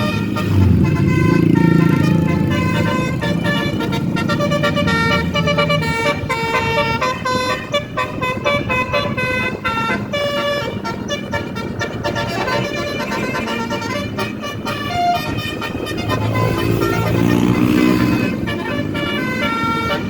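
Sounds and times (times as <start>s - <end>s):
low steady rumble: 0.0s - 11.2s
multi-tone bus horn tune: 0.0s - 20.0s.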